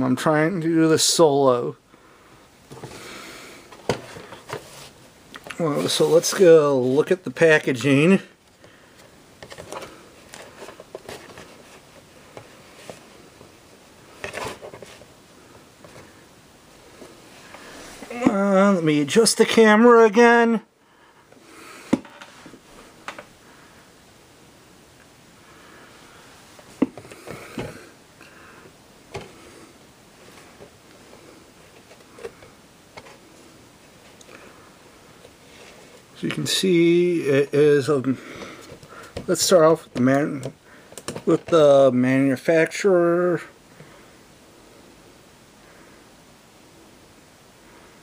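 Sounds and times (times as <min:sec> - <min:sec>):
clicks and knocks of handling: 0:39.9 - 0:41.6.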